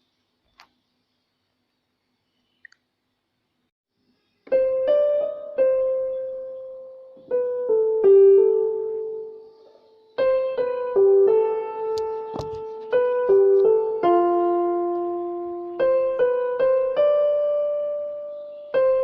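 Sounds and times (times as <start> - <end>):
slow piano melody: 4.4 - 19.0.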